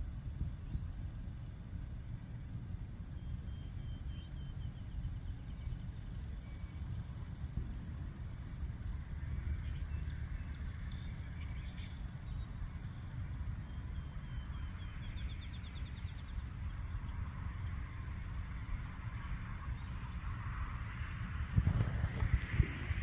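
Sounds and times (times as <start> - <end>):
low outdoor rumble: 0.0 - 23.0.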